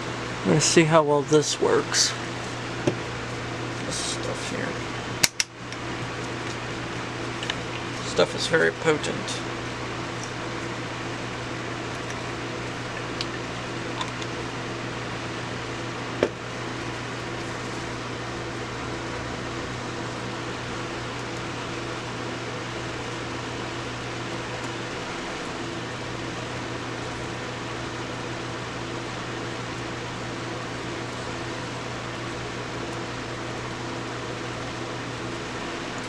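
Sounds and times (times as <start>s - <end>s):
fan-like hiss and hum: 0.0s - 36.0s
sharp click: 5.2s - 5.6s.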